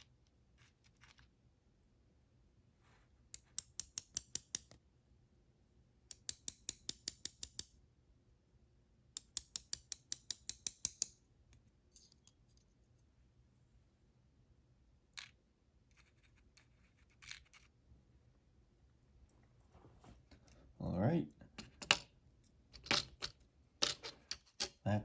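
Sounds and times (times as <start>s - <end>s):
padlock clicking: 3.4s - 4.7s, 6.1s - 7.7s.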